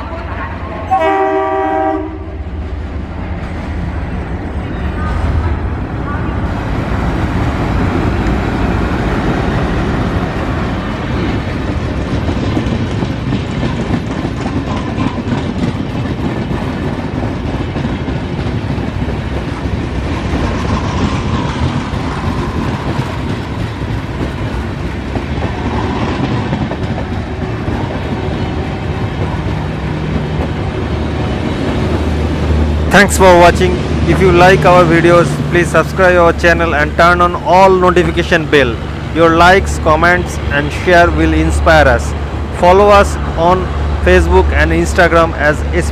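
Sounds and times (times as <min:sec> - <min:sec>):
train wheels clacking over rail joints: 0:07.8 - 0:32.8.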